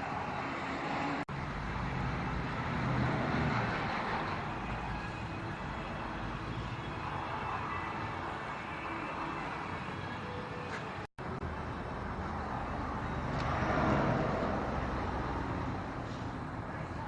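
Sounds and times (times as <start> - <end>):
vehicle passing: 0.0 - 9.9, 11.3 - 17.0
road traffic noise: 0.0 - 17.0.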